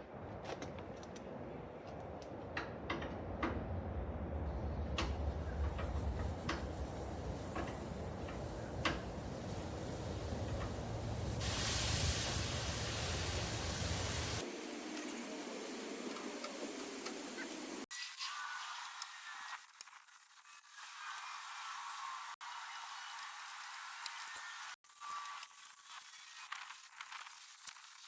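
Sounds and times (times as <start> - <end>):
low steady hum: 0.0 - 14.4
metallic clicks and knocks: 2.2 - 4.0
loud steady hiss: 4.5 - 17.8.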